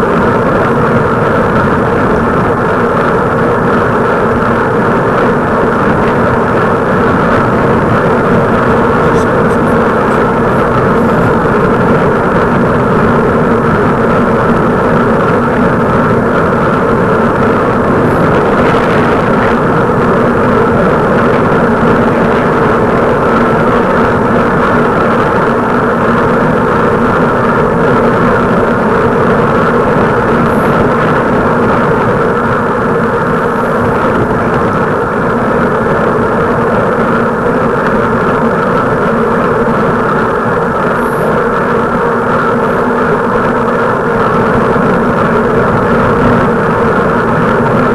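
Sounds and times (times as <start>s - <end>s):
vehicle engine drone: 0.0s - 47.9s.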